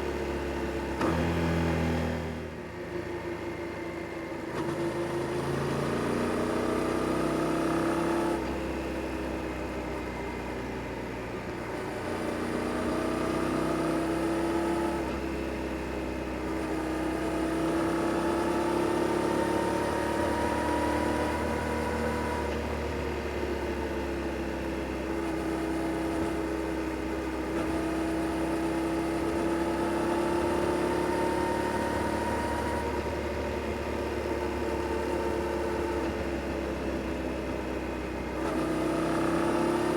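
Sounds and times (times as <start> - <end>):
motorcycle engine revving: 4.5 - 8.5, 16.5 - 22.6, 38.3 - 39.9.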